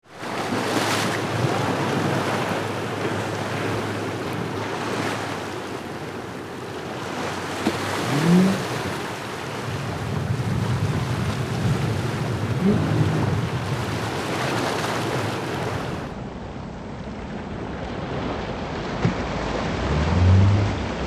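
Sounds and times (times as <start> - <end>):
breaking surf: 0.0 - 16.2
wind buffeting microphone: 7.1 - 16.2.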